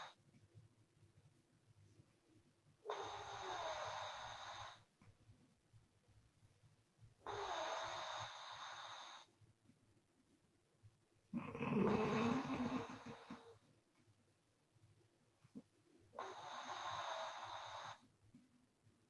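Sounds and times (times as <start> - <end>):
woman snoring through lips: 2.9 - 4.8, 7.2 - 9.3, 11.4 - 13.6, 16.2 - 18.0.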